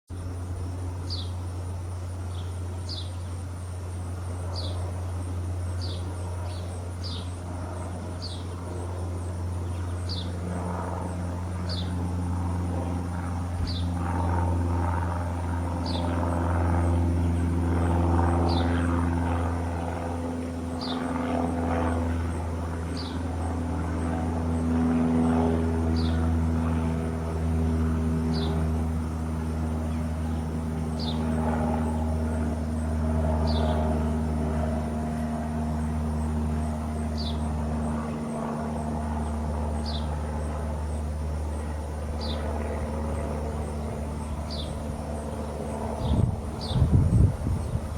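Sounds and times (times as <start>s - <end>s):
low mechanical hum: 0.1s - 47.9s.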